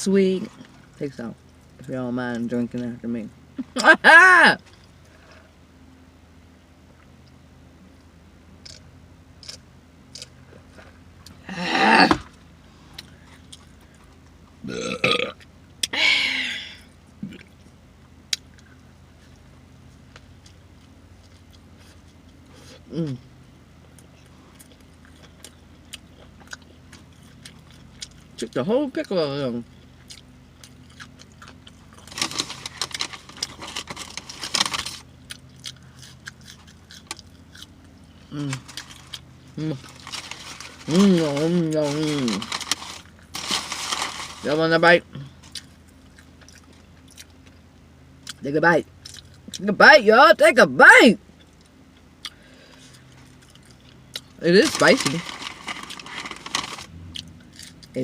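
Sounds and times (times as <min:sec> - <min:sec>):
woman burping loudly: 0:11.4 - 0:12.2, 0:14.6 - 0:17.4
paper wrapper crinkling: 0:32.0 - 0:35.1, 0:38.4 - 0:44.6, 0:54.6 - 0:56.9.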